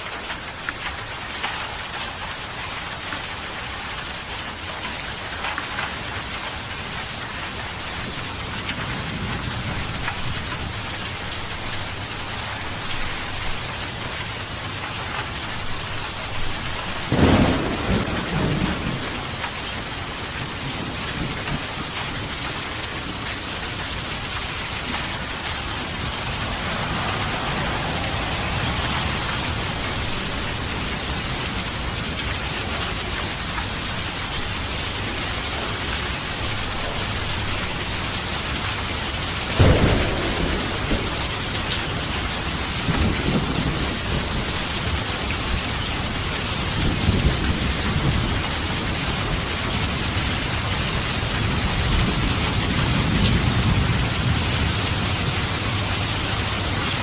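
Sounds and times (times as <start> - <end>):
heavy rain: 0.0 - 57.0
thunder clap: 16.4 - 23.2, 24.2 - 33.8, 39.4 - 49.4.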